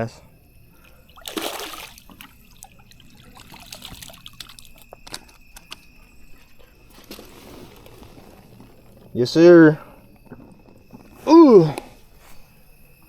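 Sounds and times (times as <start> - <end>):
water dripping: 0.4 - 6.9
water splashing: 0.7 - 7.1
small clicks: 4.4 - 5.9.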